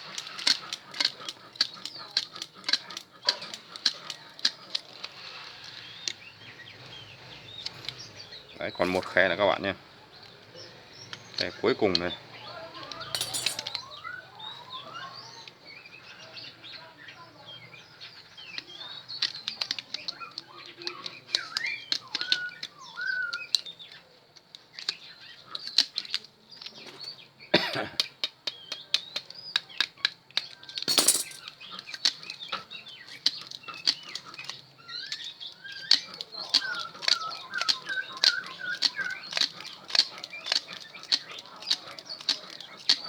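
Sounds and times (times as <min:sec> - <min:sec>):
small birds chirping: 0:00.0 - 0:43.0
wire winding clicks: 0:12.9 - 0:13.8, 0:33.1 - 0:43.0.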